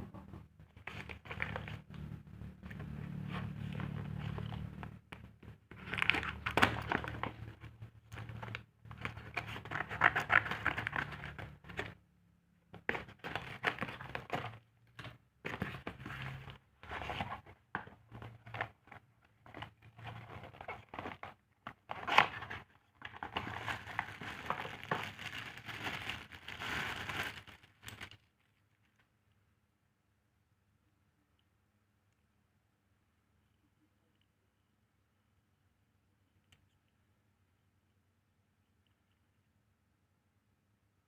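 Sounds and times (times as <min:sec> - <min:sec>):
packaging crinkling and tearing: 0:00.8 - 0:02.1, 0:03.6 - 0:12.0, 0:12.8 - 0:28.3.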